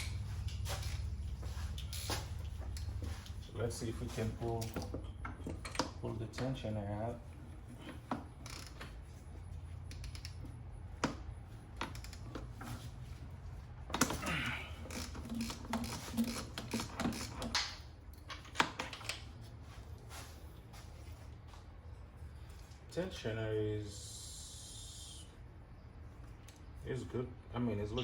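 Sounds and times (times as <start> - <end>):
metal tools clicking on engine: 9.8 - 10.7, 14.8 - 19.3.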